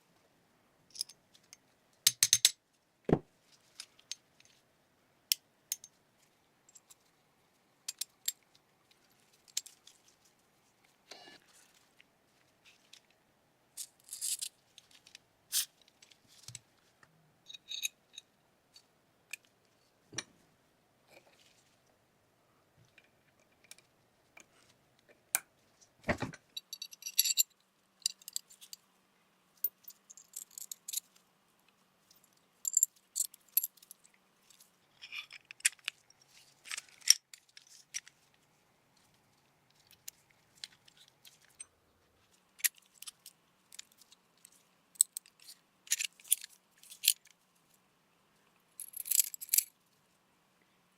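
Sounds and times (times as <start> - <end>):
metal parts clicking and clinking: 0.9 - 2.6, 7.9 - 8.5, 17.5 - 18.3, 26.5 - 28.8, 29.6 - 31.2, 32.1 - 38.1, 45.0 - 47.4, 48.8 - 49.7.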